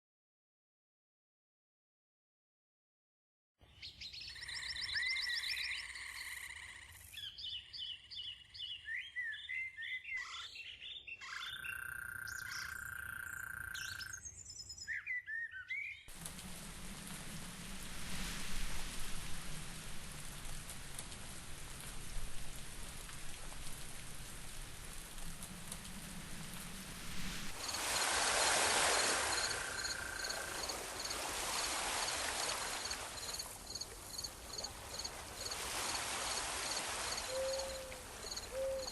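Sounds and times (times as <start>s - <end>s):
steady hiss: 16.1s - 38.6s.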